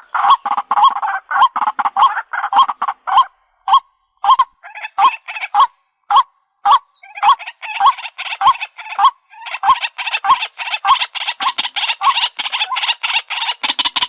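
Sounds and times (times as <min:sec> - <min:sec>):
bird croaking calls: 0:00.0 - 0:14.0.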